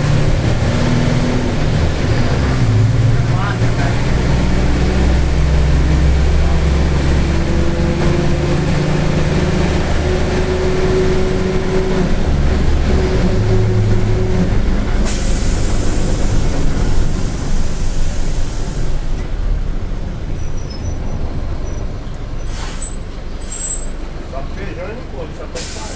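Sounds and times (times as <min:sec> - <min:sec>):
diesel bus engine rumbling: 0:00.0 - 0:25.9
air brakes hissing: 0:15.0 - 0:19.2, 0:20.4 - 0:24.0, 0:25.5 - 0:25.9.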